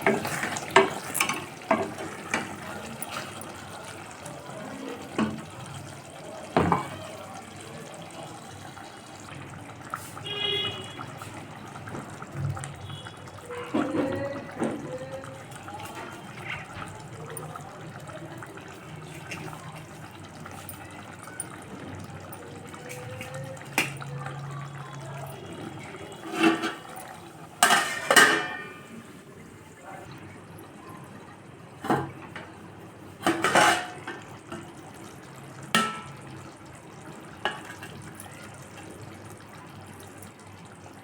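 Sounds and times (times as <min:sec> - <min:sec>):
dishes and utensils clattering: 0:00.0 - 0:04.1, 0:06.5 - 0:07.0, 0:25.8 - 0:30.0, 0:31.8 - 0:34.8, 0:35.7 - 0:36.4, 0:37.4 - 0:38.7
water running: 0:00.0 - 0:31.0, 0:31.6 - 0:40.8.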